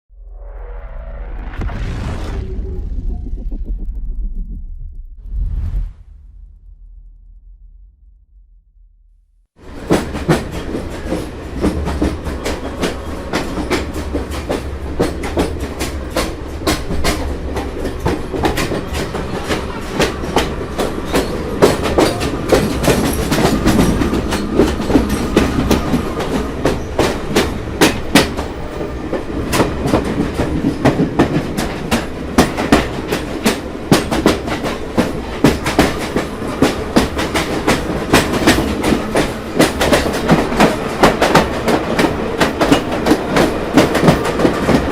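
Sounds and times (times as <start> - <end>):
train rumbling past: 0.2 - 4.6, 9.6 - 44.9
wheels clacking over rail joints: 9.7 - 44.9.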